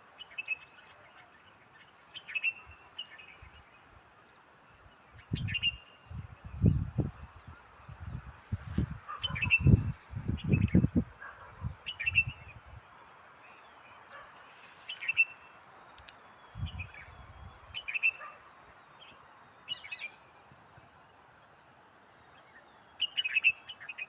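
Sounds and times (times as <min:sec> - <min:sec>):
birds chirping: 0:00.0 - 0:24.0
faint steady hiss: 0:10.3 - 0:24.0.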